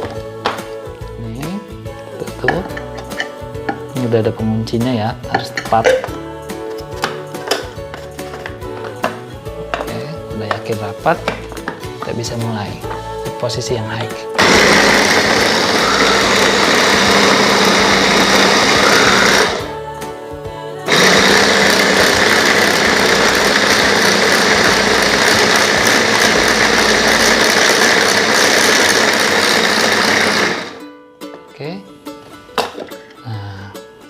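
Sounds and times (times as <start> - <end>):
blender grinding meat: 14.4 - 19.7, 20.9 - 30.8.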